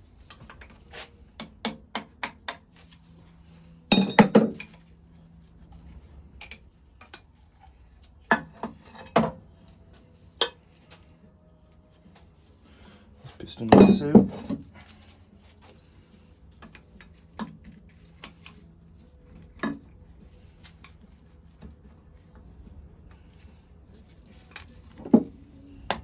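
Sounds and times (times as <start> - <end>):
metal tools knocking on metal: 3.9 - 4.8, 13.6 - 14.7.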